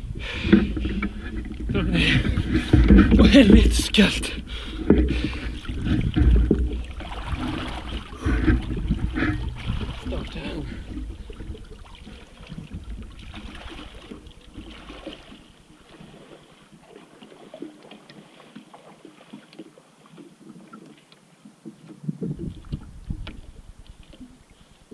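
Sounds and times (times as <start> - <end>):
wind buffeting microphone: 0.0 - 14.4, 22.0 - 24.2
river water splashing: 0.0 - 24.9.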